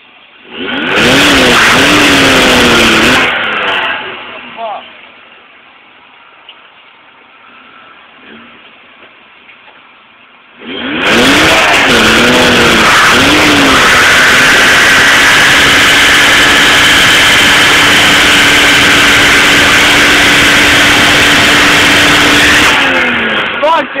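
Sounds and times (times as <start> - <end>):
car engine revving: 0.4 - 5.2, 10.5 - 24.0
tyres spinning and squealing: 10.6 - 22.8.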